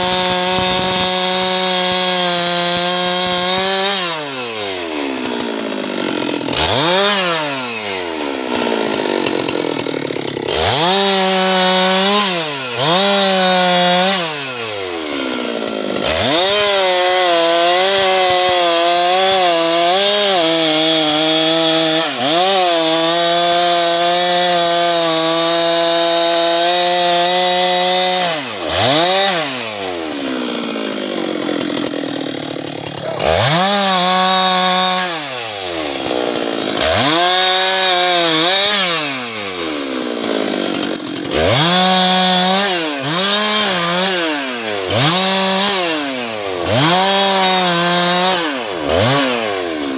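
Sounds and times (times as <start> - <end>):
chainsaw cutting wood: 0.0 - 49.9
chainsaw revving: 0.0 - 49.9.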